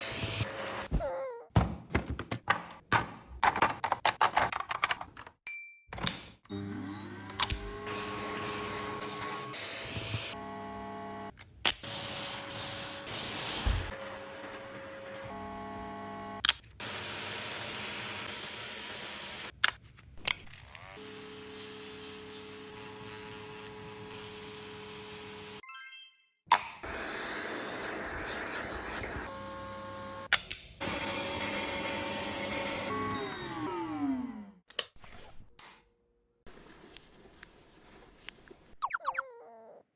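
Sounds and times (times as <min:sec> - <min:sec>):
electric grooming tool humming: 0:06.5 - 0:11.3, 0:11.9 - 0:19.5, 0:21.0 - 0:25.6, 0:29.0 - 0:34.3.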